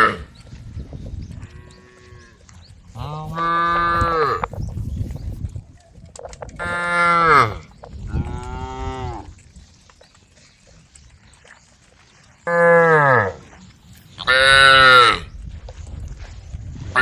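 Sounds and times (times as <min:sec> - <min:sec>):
cows mooing: 0:00.0 - 0:00.3, 0:01.4 - 0:04.5, 0:06.6 - 0:09.4, 0:12.4 - 0:13.5, 0:14.2 - 0:15.3.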